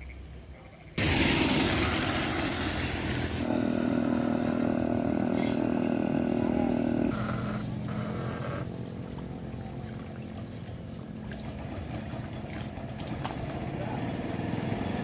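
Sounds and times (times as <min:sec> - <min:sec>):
loud hiss: 0:01.0 - 0:07.2
small engine running: 0:01.0 - 0:09.1.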